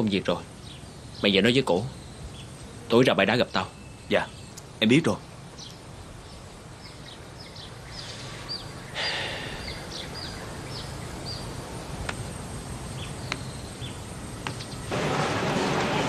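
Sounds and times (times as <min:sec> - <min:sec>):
small birds chirping: 0:00.0 - 0:14.9
outdoor background noise: 0:00.0 - 0:16.0
rush of noise: 0:14.9 - 0:16.0.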